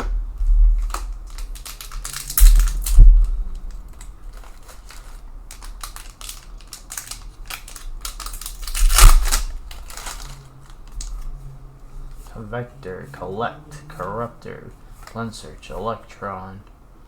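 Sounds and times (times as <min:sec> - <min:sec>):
cards rustling and sliding: 0:00.7 - 0:12.4
cards clicking and flicking: 0:00.8 - 0:11.3
low thumps: 0:02.3 - 0:04.4.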